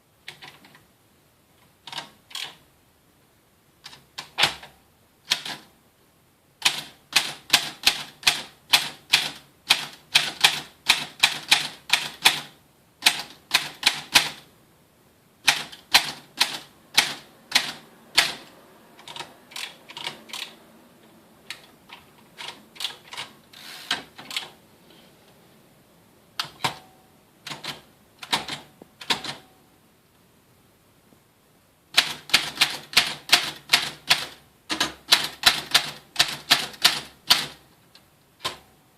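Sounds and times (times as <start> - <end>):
typewriter keystrokes: 1.9 - 2.6, 3.8 - 5.7, 6.6 - 14.5, 15.5 - 20.6, 27.4 - 29.5, 32.0 - 37.6, 38.4 - 38.6.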